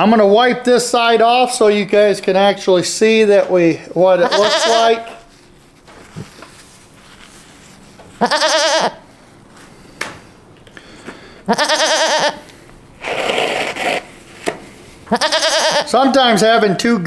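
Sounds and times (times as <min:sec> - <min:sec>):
goat bleating: 0:04.1 - 0:05.3, 0:08.2 - 0:09.1, 0:11.5 - 0:12.5, 0:15.1 - 0:16.1.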